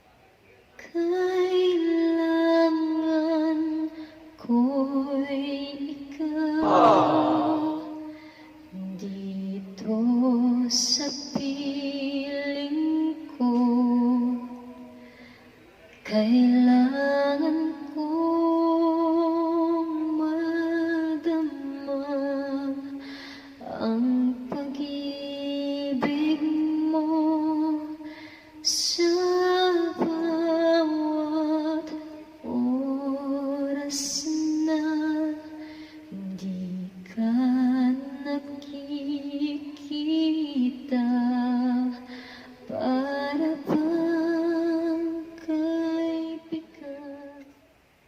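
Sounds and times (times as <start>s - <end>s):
woman singing a cappella: 0.8s - 15.3s, 16.0s - 47.9s
quick breath: 23.0s - 23.5s, 28.1s - 28.6s, 35.6s - 36.1s, 42.1s - 42.6s.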